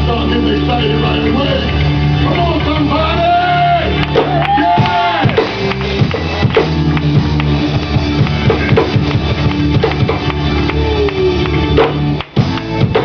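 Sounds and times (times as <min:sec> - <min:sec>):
drum kit beat: 0:00.0 - 0:13.0
live band playing: 0:00.0 - 0:13.0.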